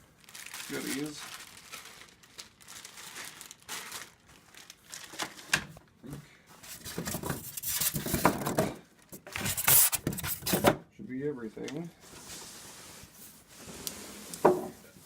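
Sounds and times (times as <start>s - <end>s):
packaging crinkling and rustling: 0.0s - 5.8s, 6.6s - 10.7s.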